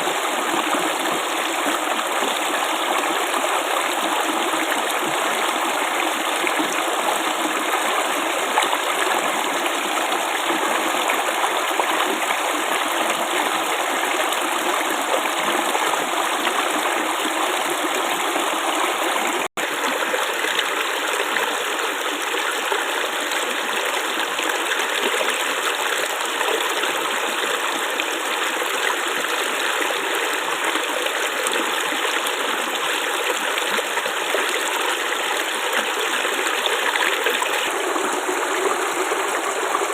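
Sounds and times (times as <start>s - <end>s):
water babbling: 0.0s - 39.9s.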